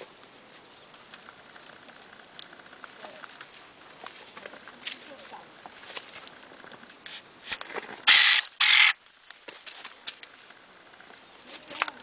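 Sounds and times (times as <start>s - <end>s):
electric pruning shears whirring: 8.0s - 9.0s.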